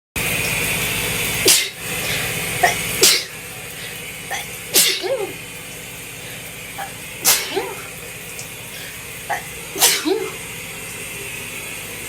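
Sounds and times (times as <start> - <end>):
running shower water hiss: 0.2 - 12.0
person sneezing: 1.5 - 1.8, 2.6 - 3.4, 4.3 - 5.4, 7.2 - 7.9, 9.3 - 10.4.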